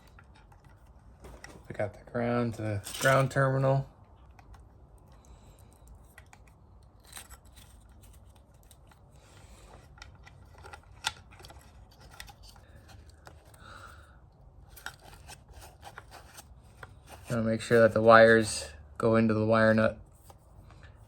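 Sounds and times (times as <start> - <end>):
clicks and scraping of wires: 0.0 - 1.9, 2.6 - 13.6.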